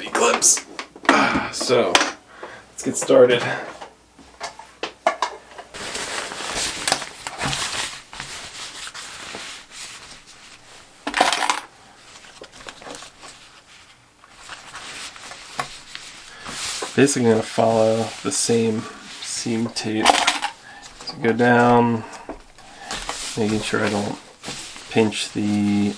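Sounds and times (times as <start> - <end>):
jacket fabric rustling: 0.0 - 0.6, 5.7 - 25.9.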